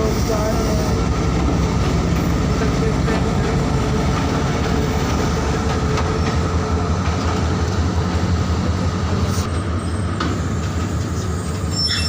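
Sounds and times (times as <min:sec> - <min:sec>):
train engine rumble: 0:00.0 - 0:12.0.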